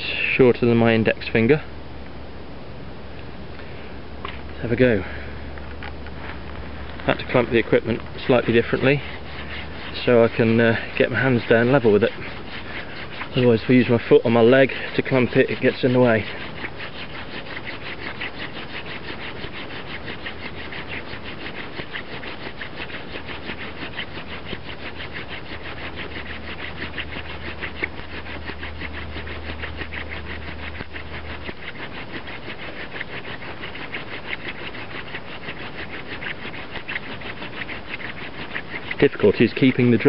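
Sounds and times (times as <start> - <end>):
low hum: 0.0 - 39.0
hand drill rasping on wood: 4.2 - 40.0.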